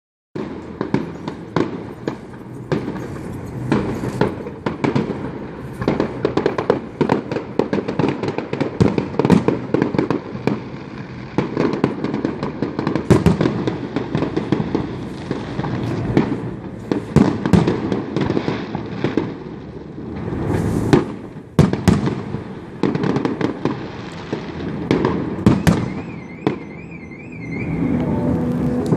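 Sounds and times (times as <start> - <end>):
fireworks bangs and crackles: 0.4 - 28.9
faint warbling electronic tone: 26.1 - 28.9.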